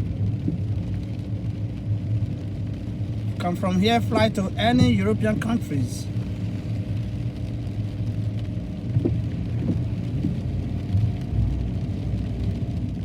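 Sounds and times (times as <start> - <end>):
car engine and tyre rumble: 0.0 - 13.0.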